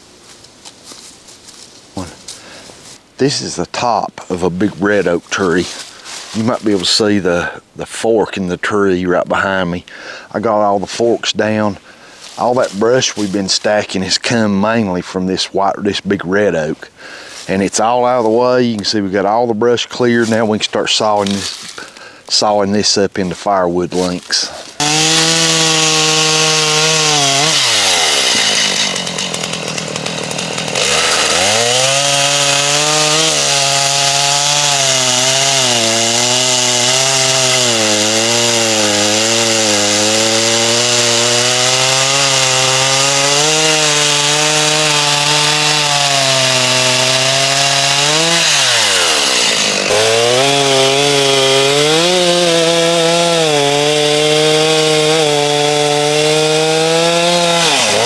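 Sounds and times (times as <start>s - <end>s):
chainsaw cutting wood: 4.8s - 7.0s, 12.2s - 13.5s, 20.2s - 22.4s, 23.4s - 58.0s.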